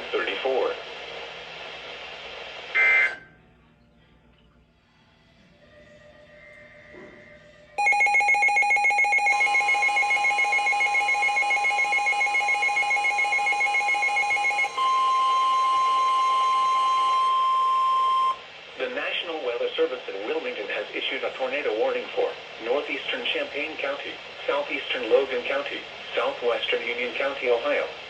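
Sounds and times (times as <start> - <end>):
pulsing alarm beep: 7.8 - 18.4
steady warning alarm tone: 7.8 - 18.5.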